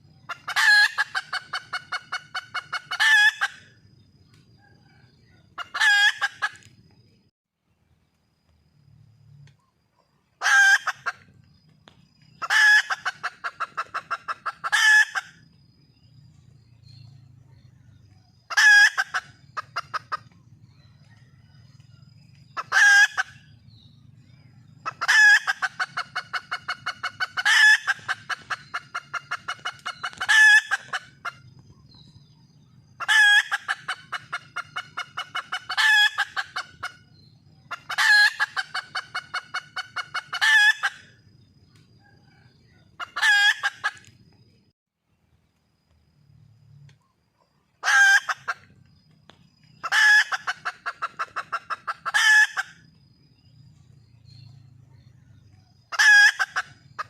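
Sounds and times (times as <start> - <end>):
hen calling with clucks: 0.1 - 3.8, 4.7 - 6.8, 10.4 - 11.4, 12.3 - 15.4, 17.5 - 24.2, 24.8 - 31.8, 32.9 - 41.2, 42.0 - 44.2, 47.7 - 48.9, 49.7 - 53.0, 54.4 - 57.0.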